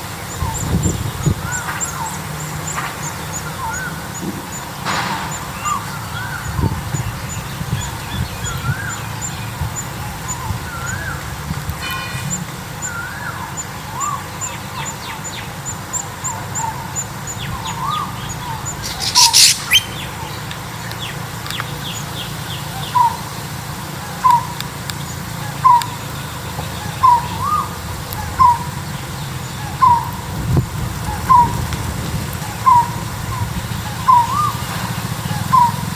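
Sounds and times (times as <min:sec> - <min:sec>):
birds whistling: 0:00.0 - 0:11.4, 0:12.2 - 0:23.3, 0:24.1 - 0:35.9
high scratchy bird chirping: 0:16.8 - 0:21.2
bird repeating short note: 0:18.7 - 0:20.2.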